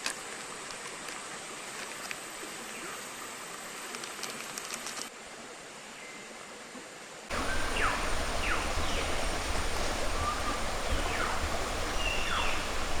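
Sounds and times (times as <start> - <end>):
falling whistled calls: 7.3 - 13.0
stream rushing: 7.3 - 13.0.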